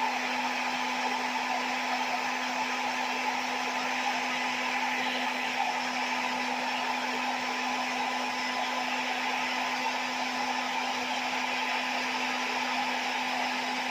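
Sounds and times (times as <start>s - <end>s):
hair dryer running: 0.0s - 13.9s.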